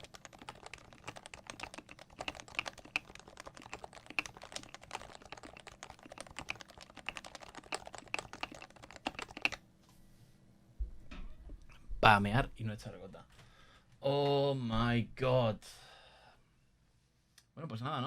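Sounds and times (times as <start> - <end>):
fast keyboard typing: 0.0 - 9.6.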